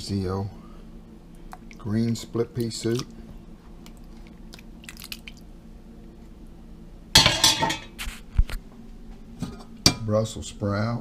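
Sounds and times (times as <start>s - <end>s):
low steady hum: 0.0s - 11.0s
clatter of pots or dishes: 7.2s - 8.0s.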